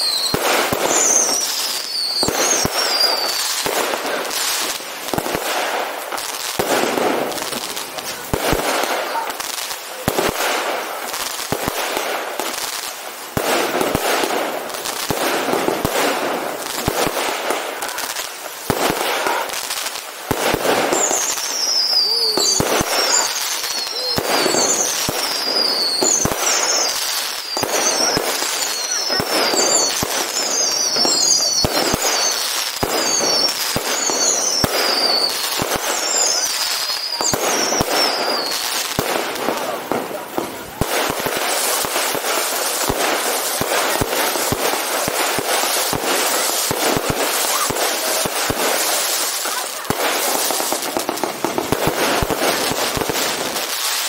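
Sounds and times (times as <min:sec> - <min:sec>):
high falling firework whistle: 0:00.0 - 0:03.7, 0:20.6 - 0:39.8
firework bursts and crackling: 0:00.0 - 0:54.0.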